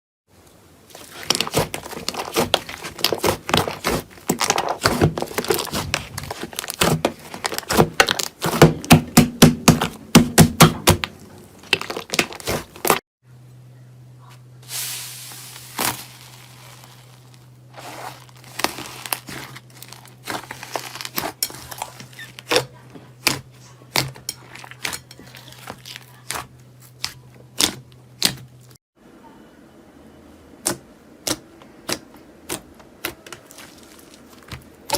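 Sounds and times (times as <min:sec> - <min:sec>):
slime crackling and popping: 0:00.9 - 0:08.7, 0:14.7 - 0:22.6.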